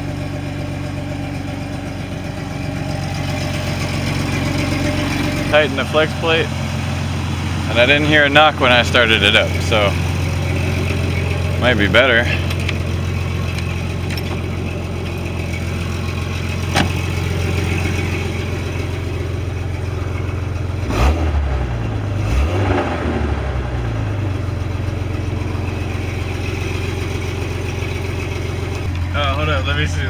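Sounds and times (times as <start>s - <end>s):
car engine idling: 0.0s - 30.0s
engine revving: 2.3s - 30.0s
thump: 16.7s - 17.1s.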